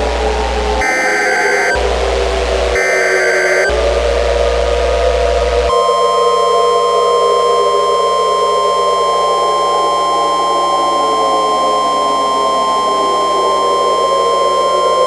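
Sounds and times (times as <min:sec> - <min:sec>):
steady electronic alarm beep: 0:00.8 - 0:01.8, 0:02.8 - 0:03.7.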